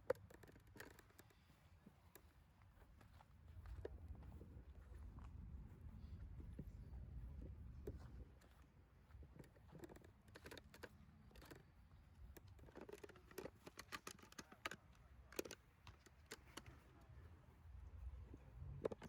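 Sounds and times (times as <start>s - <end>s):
sharp clicks: 12.3s - 16.8s.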